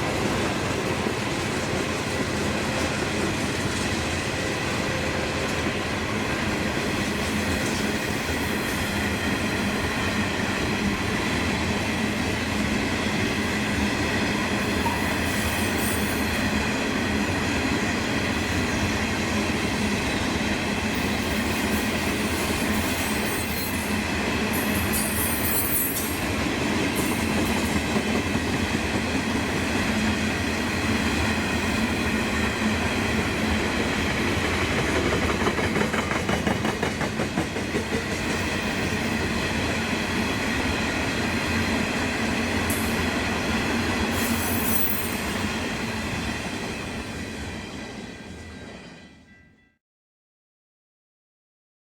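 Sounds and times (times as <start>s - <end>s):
train wheels clattering over rail joints: 34.1s - 38.9s.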